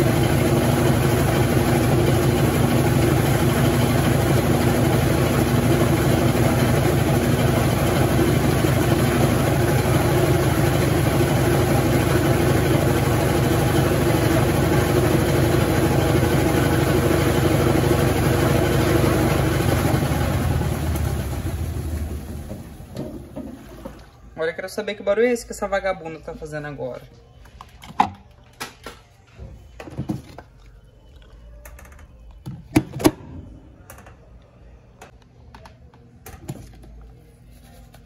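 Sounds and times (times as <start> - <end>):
washing machine spinning: 0.0 - 24.4.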